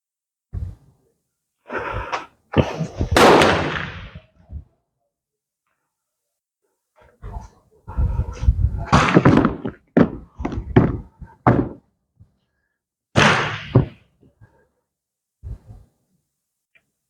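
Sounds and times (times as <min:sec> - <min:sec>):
irregular knocks and thunks: 0:08.0 - 0:11.9, 0:13.6 - 0:14.1.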